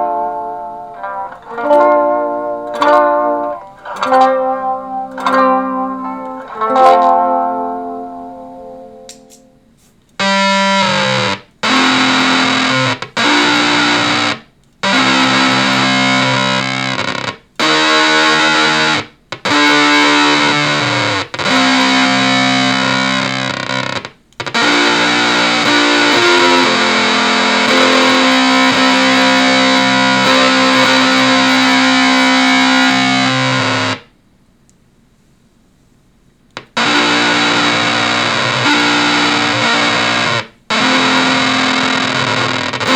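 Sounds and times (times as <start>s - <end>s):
electric guitar chords: 0.0s - 34.1s, 36.6s - 42.9s.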